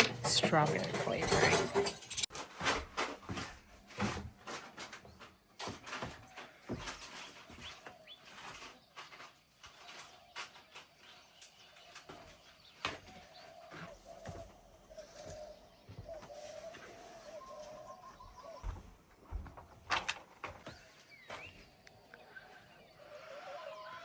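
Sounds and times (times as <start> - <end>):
dove cooing: 13.5 - 18.8.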